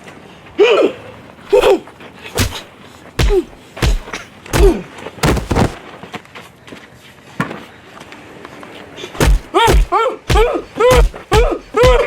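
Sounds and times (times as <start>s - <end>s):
hard thumps and slams: 2.4s - 5.8s, 9.2s - 12.0s.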